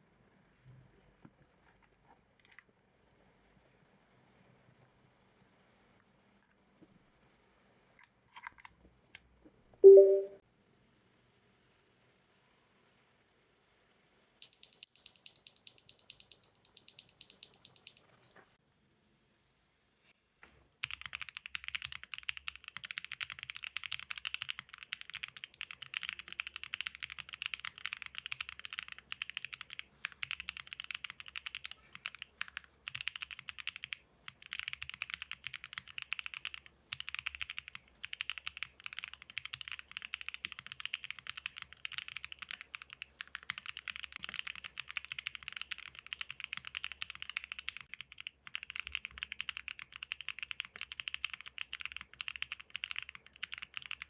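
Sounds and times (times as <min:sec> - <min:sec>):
fast mechanical keyboard typing: 0:14.4 - 0:18.1, 0:20.8 - 0:54.0.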